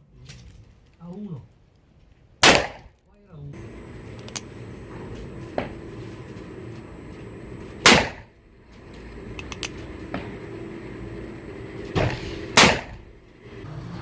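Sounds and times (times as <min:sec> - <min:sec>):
faint sharp clicks: 0:04.2 - 0:04.5
revolver shot: 0:07.8 - 0:08.3, 0:11.9 - 0:14.0.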